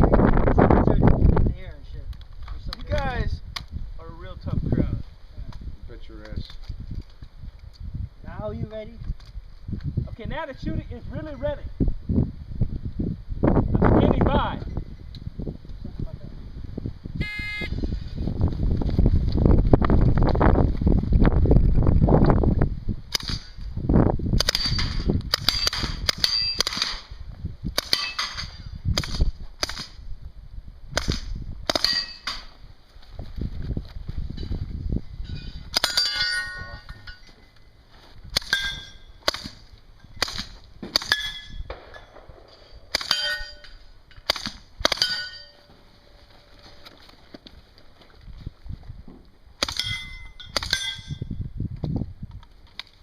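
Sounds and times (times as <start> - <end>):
steel targets ringing: 35.2 - 37.6, 38.5 - 39.2, 41.1 - 44.2, 45.0 - 45.8, 49.7 - 51.3.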